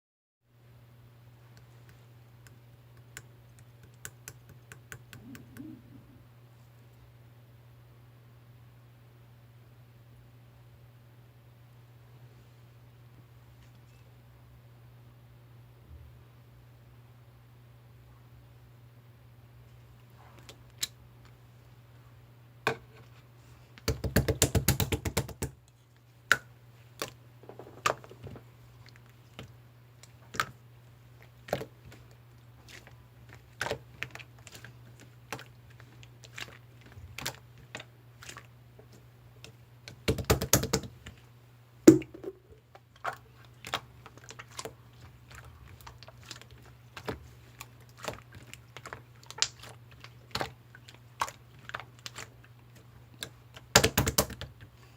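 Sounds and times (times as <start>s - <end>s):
steady low hum: 0.5s - 23.8s.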